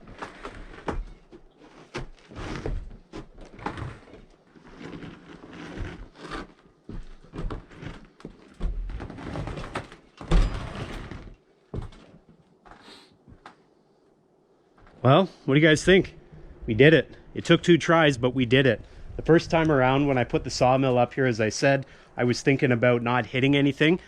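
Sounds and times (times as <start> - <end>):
scraping noises: 0.0 - 8.1.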